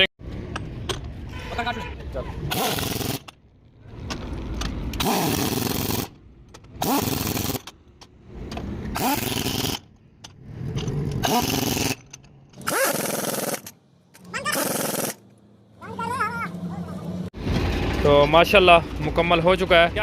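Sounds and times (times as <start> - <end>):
impact wrench bursts: 2.5 - 3.4, 4.9 - 7.8, 8.9 - 10.3, 11.2 - 15.2.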